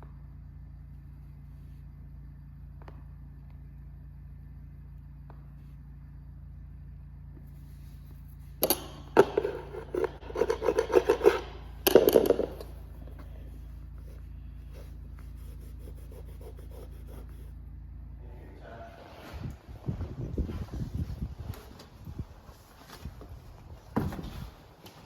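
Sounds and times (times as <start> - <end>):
faint low hum: 0.0 - 25.0
scraping on a hard floor: 7.6 - 13.4.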